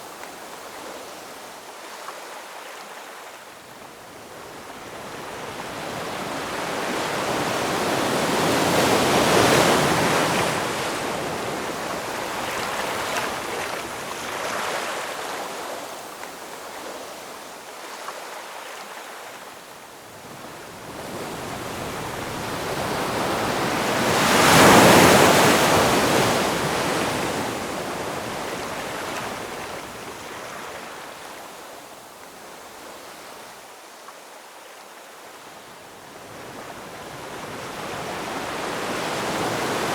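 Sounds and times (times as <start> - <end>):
ocean waves crashing: 5.7 - 15.6, 21.0 - 31.2.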